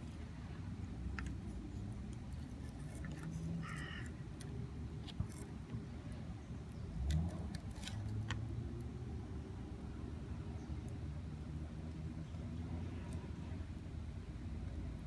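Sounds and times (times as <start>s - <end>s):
crow cawing: 3.6s - 4.1s.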